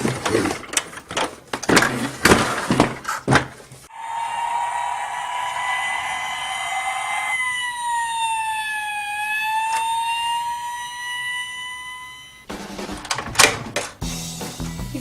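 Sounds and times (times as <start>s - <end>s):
toy siren wailing: 3.9s - 12.5s.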